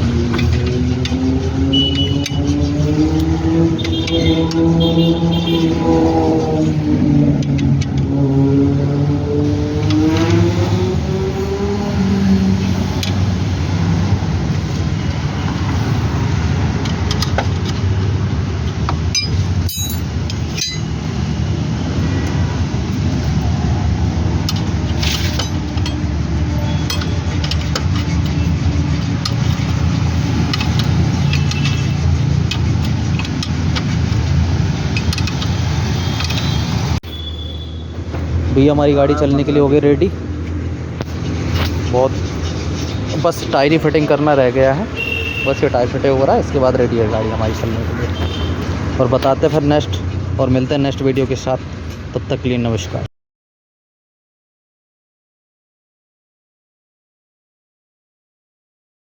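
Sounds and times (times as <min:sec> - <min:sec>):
road traffic noise: 0:00.0 - 0:53.1
metallic clinks of hand tools: 0:19.1 - 0:21.0.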